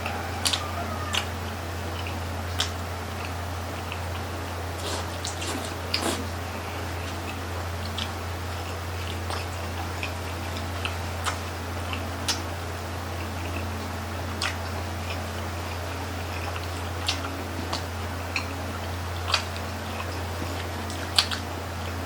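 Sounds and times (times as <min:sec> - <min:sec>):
chewing and biting: 0:00.0 - 0:12.5, 0:13.1 - 0:22.0
steady low hum: 0:00.0 - 0:22.0
mouth clicks and smacks: 0:02.0 - 0:12.5, 0:14.4 - 0:15.2, 0:16.3 - 0:18.6, 0:19.2 - 0:21.5.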